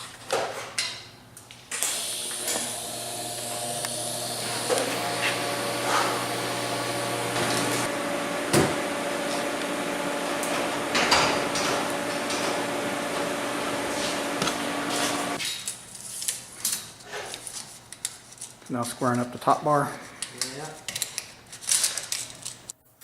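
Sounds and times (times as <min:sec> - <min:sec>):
steady machine hum: 0:01.8 - 0:15.4.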